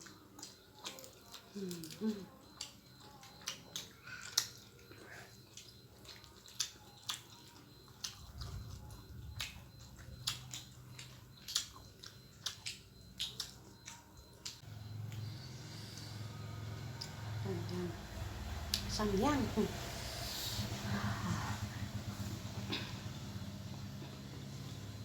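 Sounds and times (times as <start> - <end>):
person chewing: 0.0 - 17.4
wet mouth clicks and smacks: 2.6 - 15.2.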